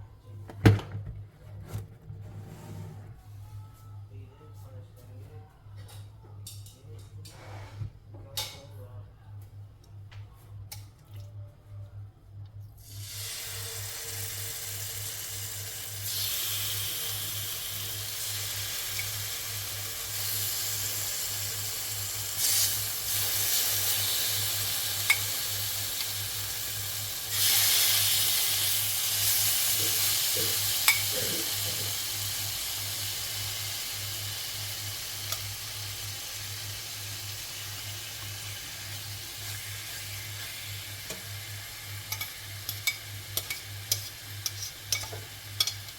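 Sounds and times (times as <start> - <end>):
chicken sizzling in a pan: 12.8 - 45.9.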